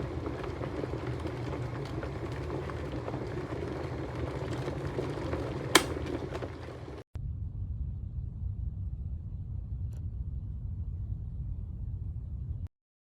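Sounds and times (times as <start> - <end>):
water bubbling in electric kettle: 0.0 - 7.0
kettle switch click: 5.7 - 6.0.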